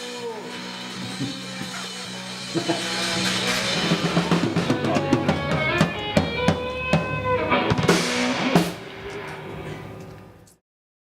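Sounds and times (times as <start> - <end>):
punk rock band music: 0.0 - 10.0.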